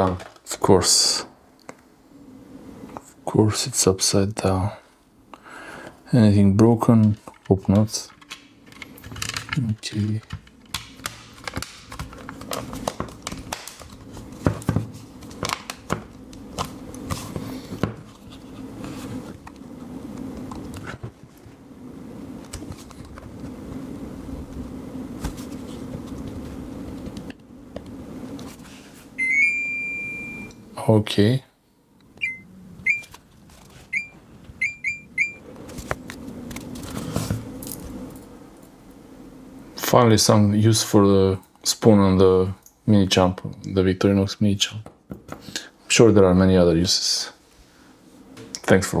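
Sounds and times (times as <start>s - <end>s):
faint steady hum: 0.0s - 49.0s
short high electronic beeps: 29.2s - 30.6s, 32.2s - 33.1s, 33.9s - 35.4s.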